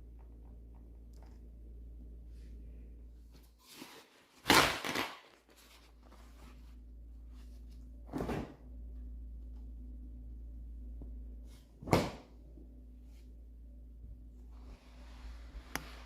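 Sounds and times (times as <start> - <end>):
steady low hum: 0.0 - 3.6, 5.8 - 16.0.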